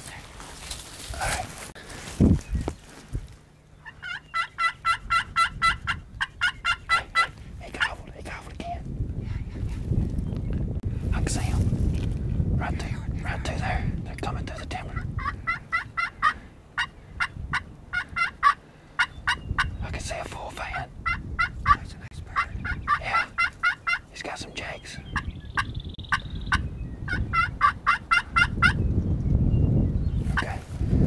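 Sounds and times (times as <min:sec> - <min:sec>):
turkey yelping: 0:03.8 - 0:07.3, 0:15.0 - 0:19.7, 0:22.4 - 0:24.1, 0:25.2 - 0:28.8.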